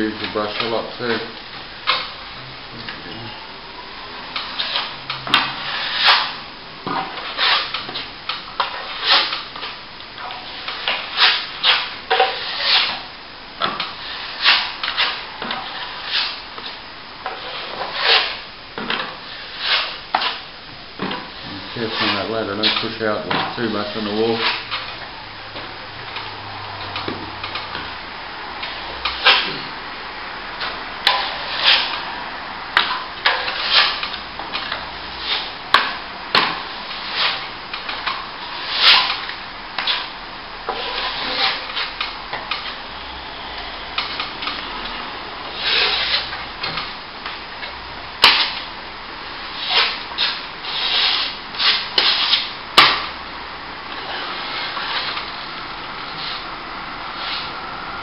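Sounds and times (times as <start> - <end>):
trowel scraping wet plaster: 5.5 - 6.4, 7.1 - 8.1, 10.4 - 13.1, 17.3 - 18.4, 21.3 - 24.9, 31.0 - 32.0, 32.8 - 35.9, 36.5 - 40.1, 40.7 - 42.8, 45.6 - 46.8, 49.6 - 53.0, 54.0 - 55.5.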